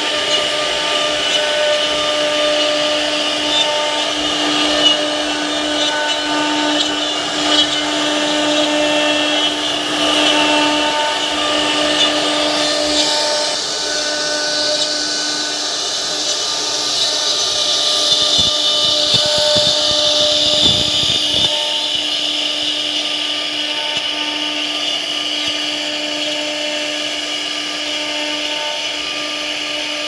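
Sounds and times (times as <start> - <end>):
router spindle high whine: 0.0 - 30.0
bit cutting wood hiss: 12.4 - 23.1.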